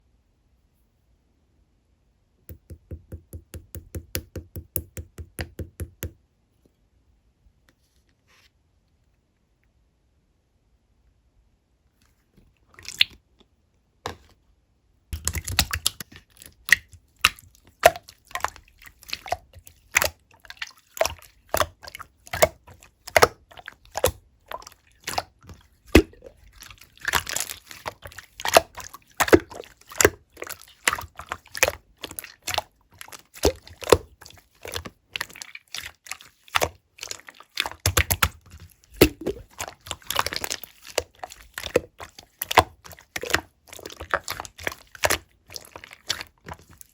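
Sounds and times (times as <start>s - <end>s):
slime squished by hand: 15.2s - 46.9s.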